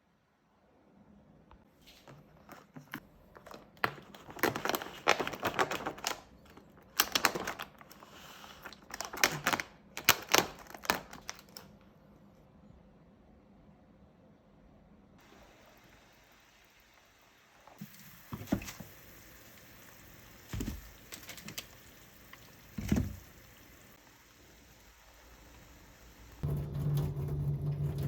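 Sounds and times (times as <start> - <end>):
crinkling and clicking handling noises: 1.8 - 12.0, 20.4 - 23.5.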